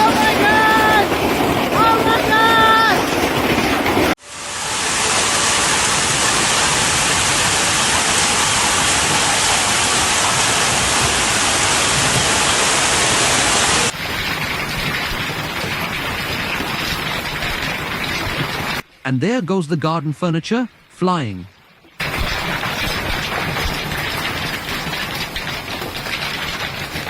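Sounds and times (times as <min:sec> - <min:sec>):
hail pelting down: 0:00.0 - 0:18.9, 0:22.0 - 0:27.0
storm hiss: 0:00.0 - 0:19.0.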